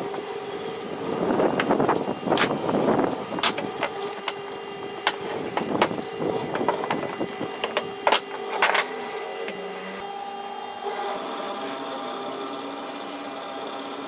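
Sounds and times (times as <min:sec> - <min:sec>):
wooden pieces knocking and clattering: 0:03.4 - 0:09.0.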